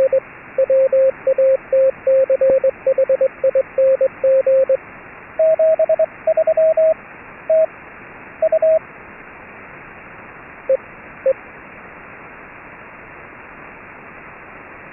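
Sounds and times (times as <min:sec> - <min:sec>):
morse code tones: 0:00.0 - 0:04.8, 0:05.4 - 0:07.7, 0:08.4 - 0:08.8
radio static hiss: 0:00.0 - 0:14.9.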